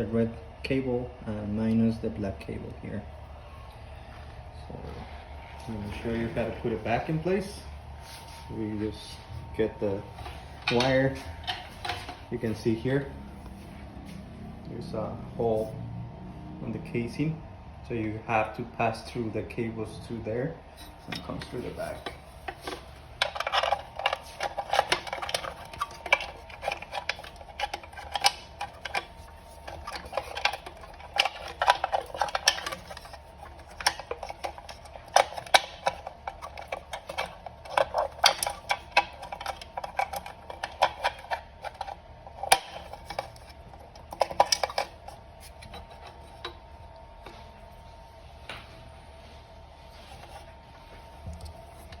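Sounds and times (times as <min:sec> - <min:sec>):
cable rustling: 0:20.8 - 0:48.0.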